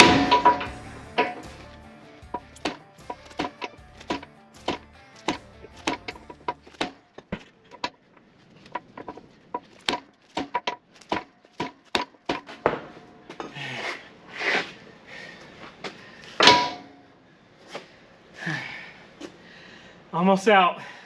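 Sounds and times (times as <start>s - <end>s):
hammer blows on steel: 0.0s - 6.6s.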